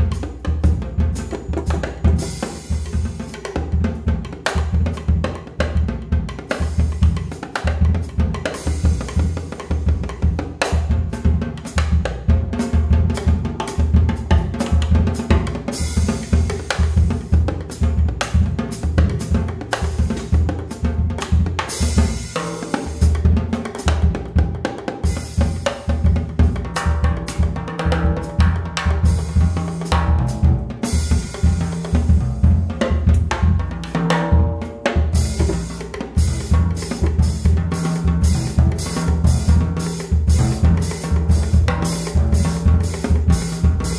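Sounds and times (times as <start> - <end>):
jazz drum kit playing: 0.0 - 43.9.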